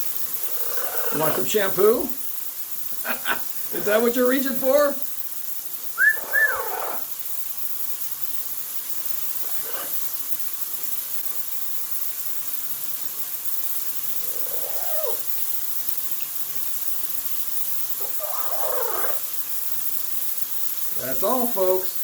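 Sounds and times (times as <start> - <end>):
shower spray hissing: 0.0 - 22.0
parrot squawking: 0.5 - 1.5, 6.0 - 7.1, 9.4 - 10.0, 14.2 - 15.2, 18.0 - 19.3.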